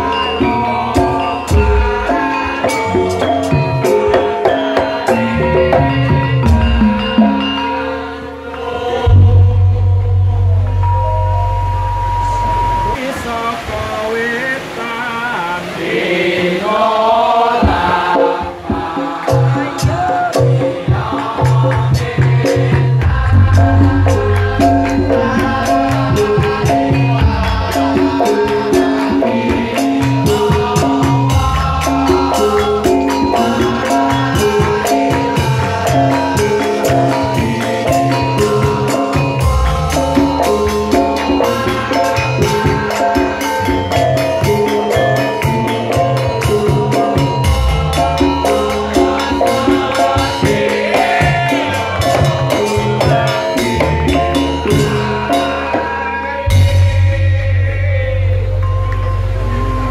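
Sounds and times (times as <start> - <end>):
struck metal keys melody: 2.7 - 13.0
drum and deep strokes: 8.7 - 13.0, 17.5 - 45.1
rapid clicking percussion: 17.6 - 55.8.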